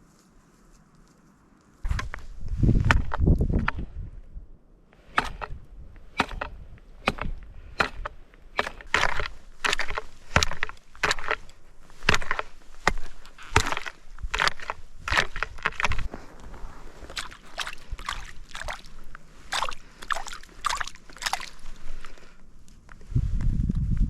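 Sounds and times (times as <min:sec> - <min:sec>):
axe chopping ice: 0:05.1 - 0:16.1
ice crunching: 0:06.2 - 0:23.2.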